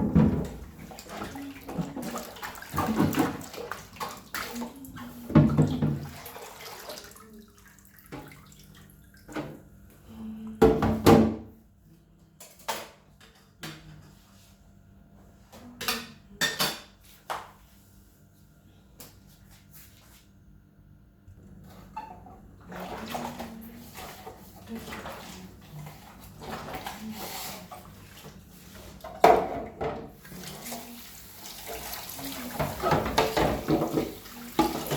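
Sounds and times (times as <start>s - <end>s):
dishes clattering: 32.6s - 34.9s.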